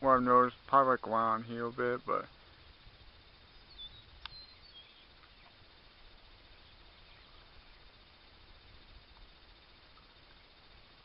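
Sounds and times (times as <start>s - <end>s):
faint high chirps: 2.1s - 11.0s
sharp click: 4.2s - 4.4s.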